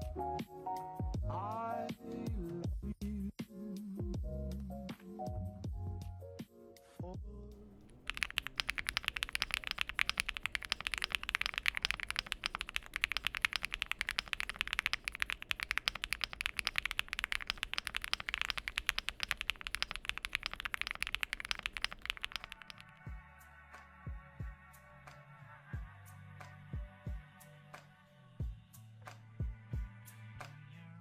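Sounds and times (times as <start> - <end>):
fast mechanical keyboard typing: 7.6 - 23.0.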